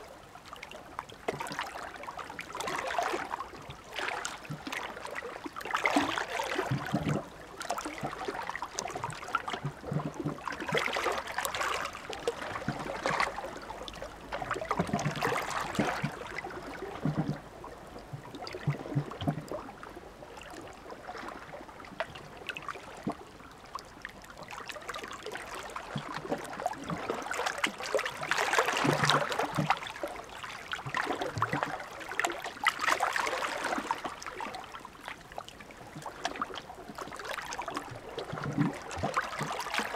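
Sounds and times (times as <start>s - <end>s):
small waves washing onto shore: 0.0s - 22.8s.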